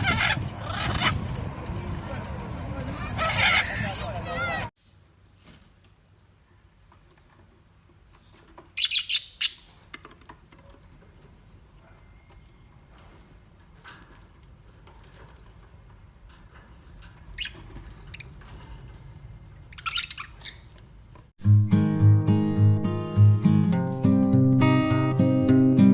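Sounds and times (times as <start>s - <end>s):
parrot squawking: 0.0s - 1.2s, 3.0s - 4.7s, 19.7s - 20.7s.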